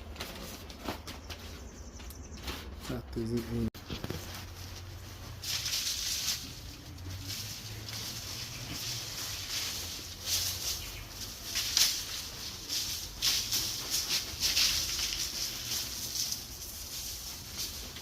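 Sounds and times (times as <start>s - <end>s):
shovel scraping litter off floor: 3.8s - 18.0s.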